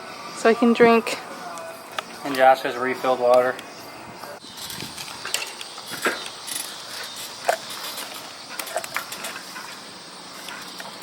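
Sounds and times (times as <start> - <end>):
bicycle clicking and rattling: 4.4 - 11.0.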